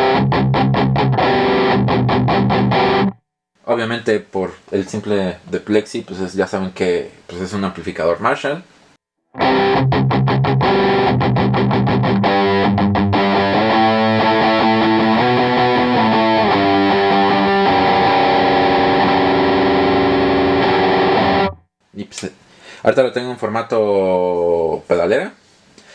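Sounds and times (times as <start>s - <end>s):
distorted electric guitar: 0.0s - 3.2s, 9.4s - 21.6s.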